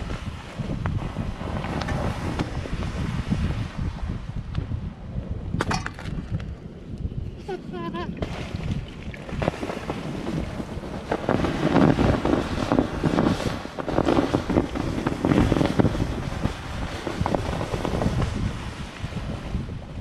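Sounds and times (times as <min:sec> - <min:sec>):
fire hissing and sizzling: 0:00.0 - 0:04.2, 0:09.3 - 0:20.0.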